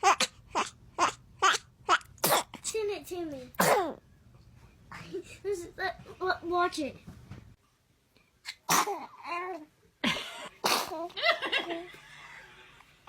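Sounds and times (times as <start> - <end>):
baby laughing: 0.0 - 2.1
baby sneezing: 0.0 - 2.8, 3.6 - 4.0, 8.4 - 9.3, 10.6 - 11.1.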